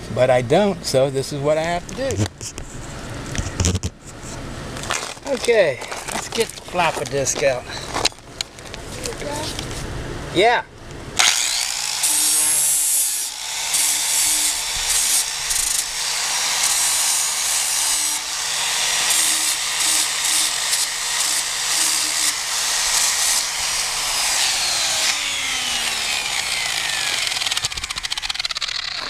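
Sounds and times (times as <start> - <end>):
angle grinder grinding metal: 11.2 - 29.0
grinder winding down: 11.2 - 29.0.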